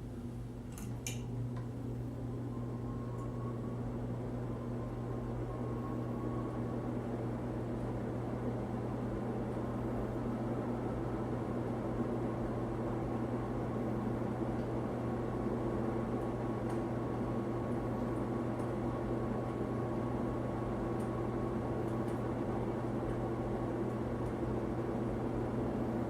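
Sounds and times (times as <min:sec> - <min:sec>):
ceiling fan motor humming: 0:00.0 - 0:26.0.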